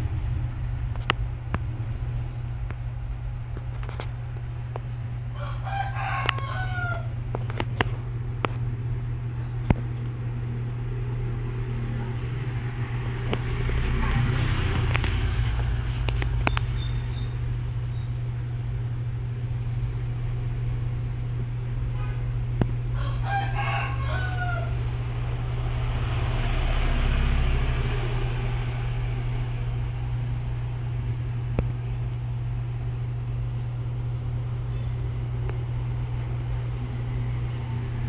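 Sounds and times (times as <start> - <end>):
low hum: 0.0 - 38.0
rooster crowing: 5.3 - 7.3, 22.9 - 27.4.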